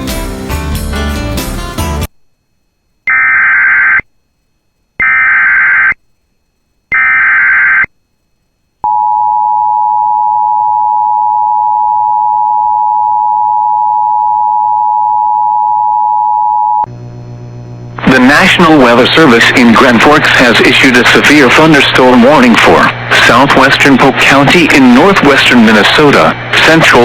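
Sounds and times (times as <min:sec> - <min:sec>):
digital header data bursts: 0:18.1 - 0:27.0.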